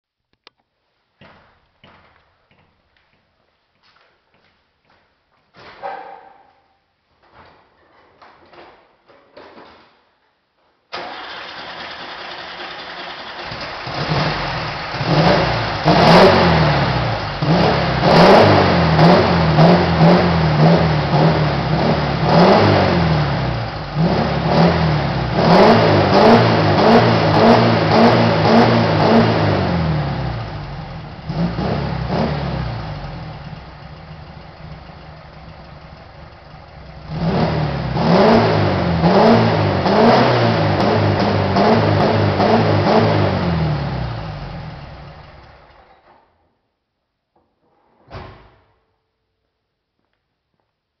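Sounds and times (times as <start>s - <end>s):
car engine revving: 11.0s - 45.6s.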